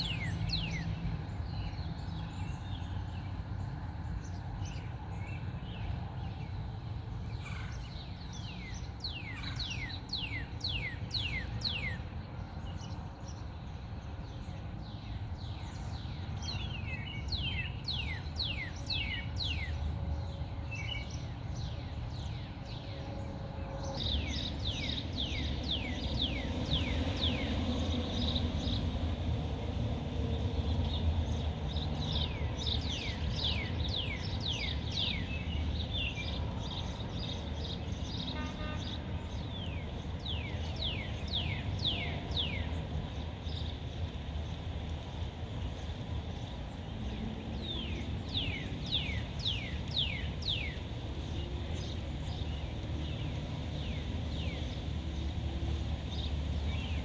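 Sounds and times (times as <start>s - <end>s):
bird chirping: 0.0s - 6.5s, 45.6s - 57.0s.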